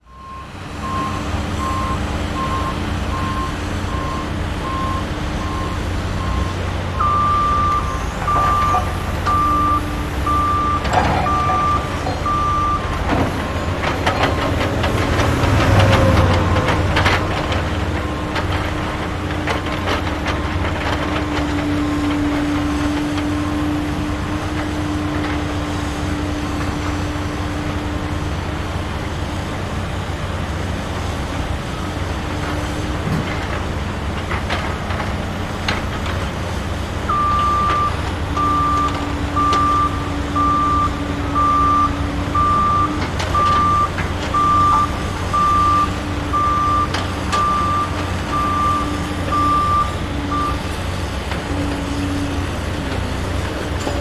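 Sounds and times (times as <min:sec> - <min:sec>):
reversing alarm beeping: 0:00.1 - 0:14.4, 0:37.1 - 0:50.7.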